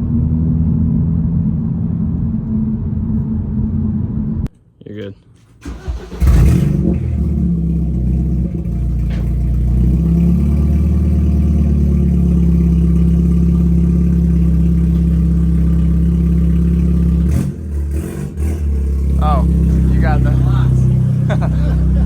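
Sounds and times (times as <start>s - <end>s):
car engine idling: 5.4s - 22.0s.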